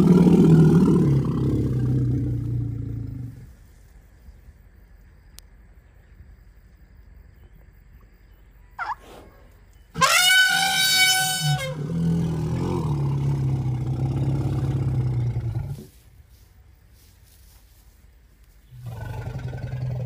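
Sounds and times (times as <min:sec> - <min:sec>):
elephant trumpeting: 0:09.9 - 0:15.7.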